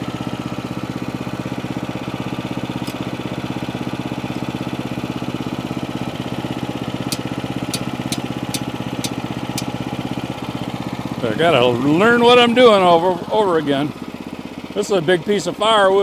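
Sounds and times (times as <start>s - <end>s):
engine idling with pulsing beat: 0.0s - 16.0s
sharp clicks: 7.1s - 9.8s.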